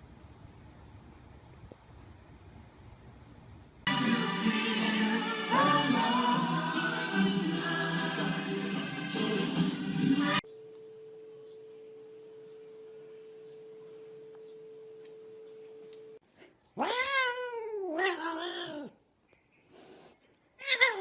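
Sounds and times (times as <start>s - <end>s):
faint steady hum: 10.4s - 16.8s
cat yowling: 16.8s - 19.0s, 20.6s - 21.0s.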